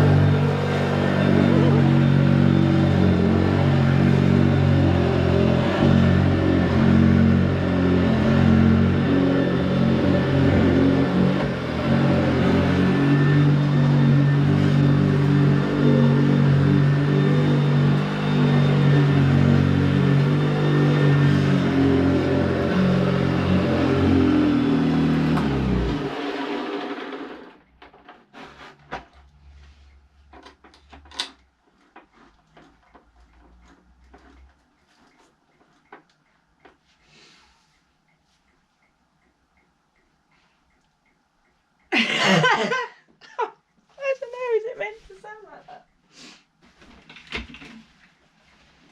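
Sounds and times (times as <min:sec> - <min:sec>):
vacuum cleaner motor hum: 0:00.0 - 0:27.6
faint clicks and knocks: 0:27.7 - 0:41.9.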